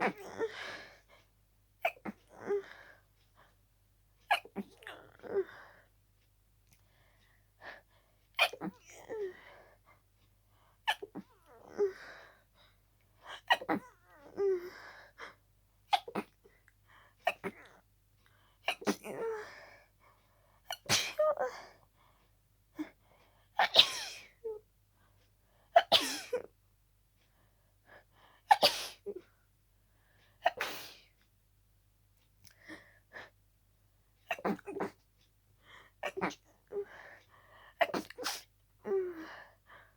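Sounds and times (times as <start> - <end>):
person sneezing: 37.8 - 38.5.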